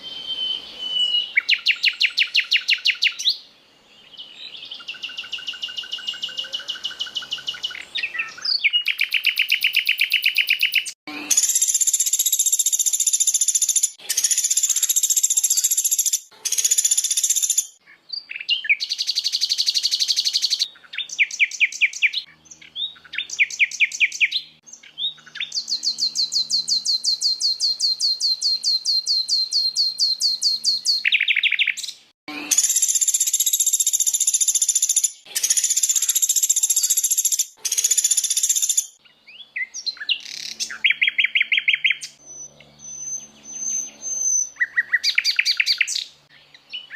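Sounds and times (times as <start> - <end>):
songbirds singing: 0.0 - 46.9.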